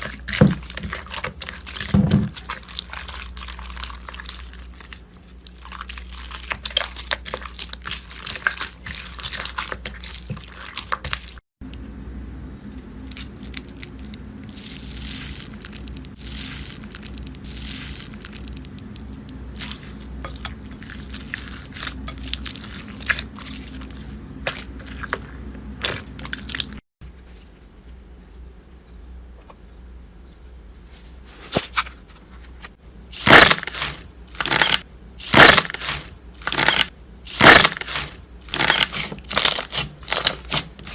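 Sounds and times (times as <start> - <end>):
slime crackling: 0.0 - 11.4, 33.2 - 40.9
wet slime squishing: 0.0 - 11.4, 13.0 - 26.8, 33.1 - 40.9.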